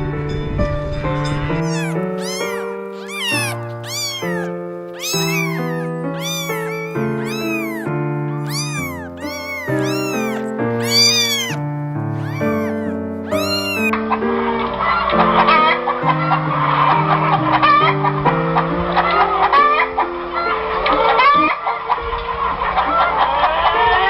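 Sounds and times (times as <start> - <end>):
cat meowing: 1.2 - 13.9.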